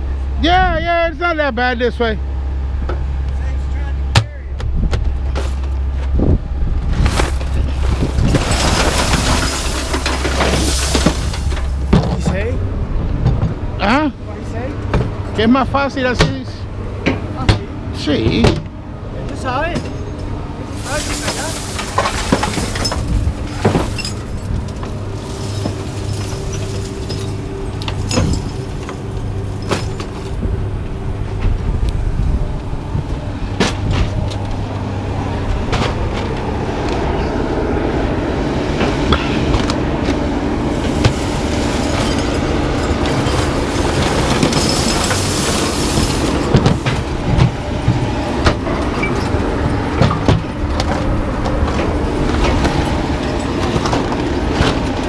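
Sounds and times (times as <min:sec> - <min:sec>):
engine running: 0:00.0 - 0:55.0
scrap metal clanking: 0:06.9 - 0:12.6, 0:19.8 - 0:30.4, 0:40.8 - 0:49.4.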